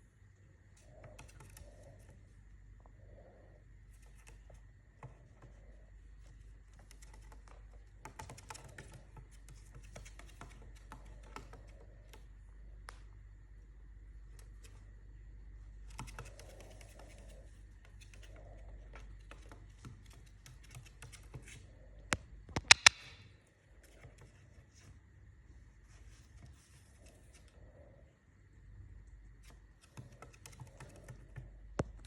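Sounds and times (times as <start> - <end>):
faint steady hum: 0.0 - 32.0
light clicking and scratching: 0.6 - 13.2, 15.7 - 25.2, 29.0 - 32.0
loud sharp clicks: 22.5 - 23.3.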